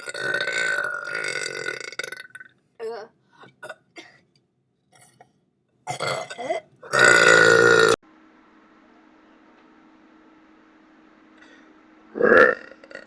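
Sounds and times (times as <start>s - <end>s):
loud drawn-out belch: 0.0s - 2.5s, 5.9s - 8.0s, 12.1s - 13.0s
faint steady hum: 0.0s - 13.0s.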